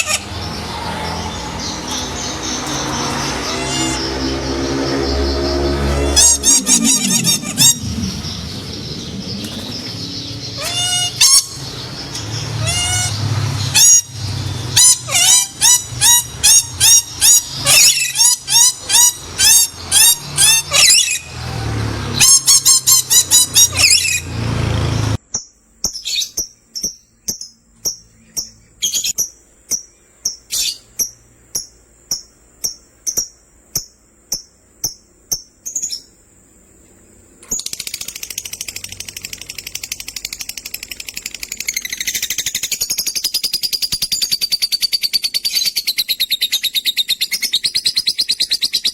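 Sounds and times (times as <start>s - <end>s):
lovebirds chirping: 0.0s - 21.5s, 25.3s - 36.2s
low hum: 0.2s - 14.7s
thin high tone: 1.3s - 11.6s.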